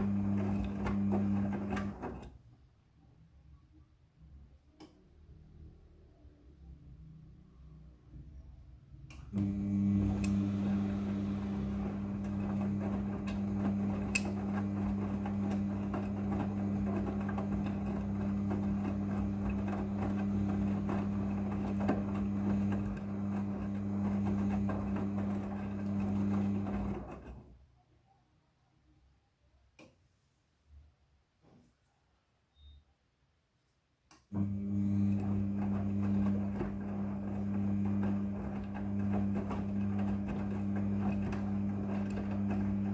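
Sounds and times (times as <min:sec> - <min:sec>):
washing machine motor hum: 0:00.0 - 0:02.5, 0:05.1 - 0:27.6, 0:34.3 - 0:42.9.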